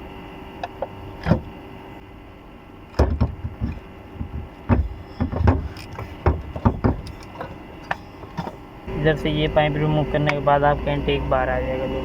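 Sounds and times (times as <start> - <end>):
tools knocking and clunking on car parts: 2.9 - 8.6.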